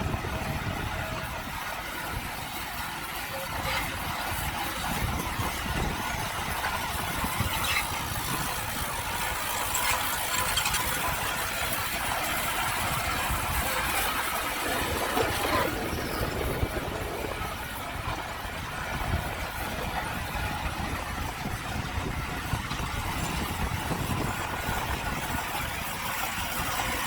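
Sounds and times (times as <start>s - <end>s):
bulldozer diesel engine running: 0.0s - 27.0s
steel tracks squealing: 2.8s - 18.2s.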